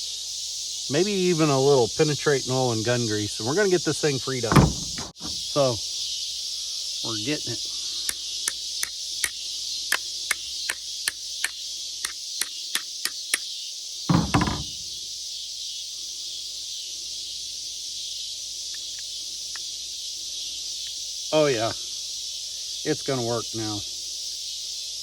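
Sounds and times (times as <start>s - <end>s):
heavy knock: 4.5s - 5.3s, 14.1s - 14.8s.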